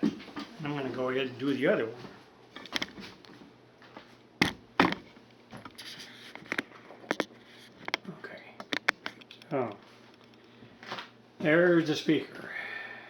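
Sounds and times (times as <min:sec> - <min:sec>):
objects knocking on work surface: 0:04.4 - 0:05.7.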